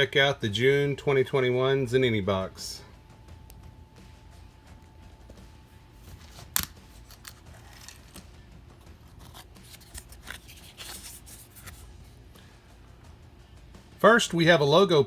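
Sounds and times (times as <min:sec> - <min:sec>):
cardboard box clicks and rustling: 0:09.1 - 0:11.8.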